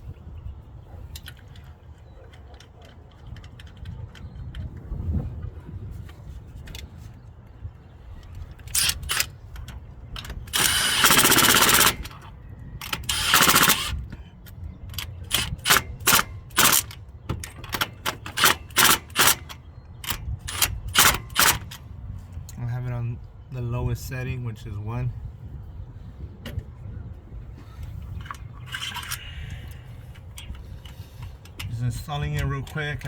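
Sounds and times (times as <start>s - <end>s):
cordless power tool rattling: 8.4s - 14.2s, 14.9s - 21.8s.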